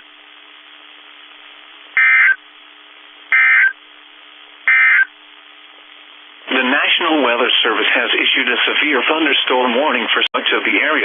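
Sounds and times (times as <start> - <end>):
faint steady hum: 0.0 - 11.0
digital data tone bursts: 2.0 - 2.4, 3.3 - 3.8, 4.7 - 5.1.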